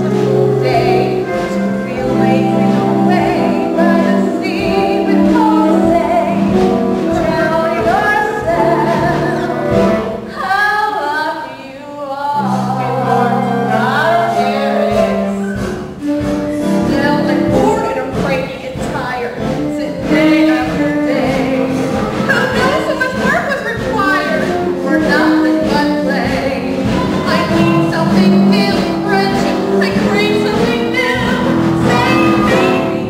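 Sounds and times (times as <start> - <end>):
band accompaniment: 0.0 - 11.1, 12.3 - 33.0
person singing: 0.0 - 18.3, 24.0 - 33.0.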